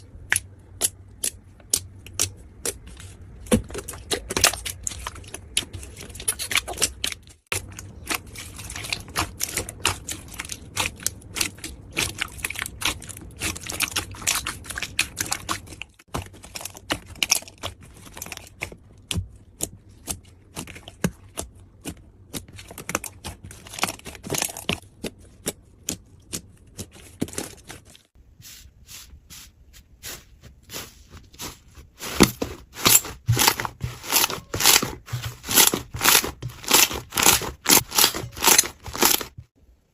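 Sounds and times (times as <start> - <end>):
slime crackling and popping: 32.8 - 39.4.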